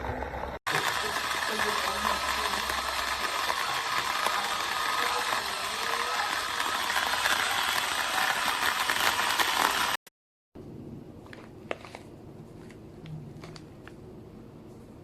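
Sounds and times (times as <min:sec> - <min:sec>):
electric coffee grinder grinding: 0:00.7 - 0:10.0.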